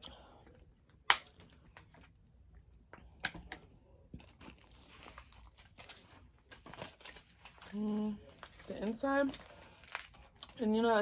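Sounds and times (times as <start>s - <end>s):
wrapper crinkling: 4.2s - 11.0s.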